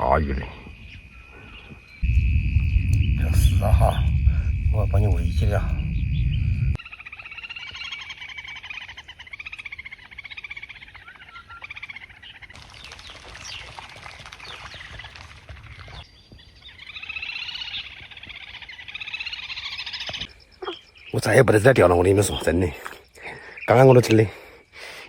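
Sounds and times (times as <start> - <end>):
frogs trilling in chorus: 0.0 - 25.0
steady hissing noise: 1.2 - 6.8.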